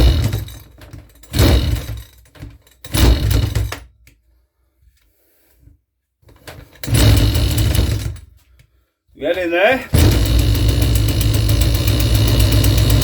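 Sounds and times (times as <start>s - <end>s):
strimmer pull-starter whirring: 0.0s - 0.6s, 1.3s - 2.0s, 6.7s - 8.2s, 9.9s - 13.0s.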